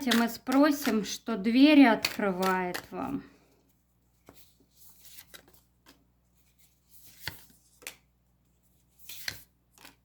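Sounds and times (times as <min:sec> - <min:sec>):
cards sliding on a table: 0:09.0 - 0:10.0.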